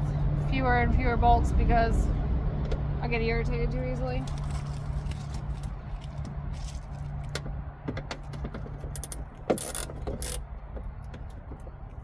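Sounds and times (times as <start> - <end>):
tools and bolts clinking: 8.0 - 12.0.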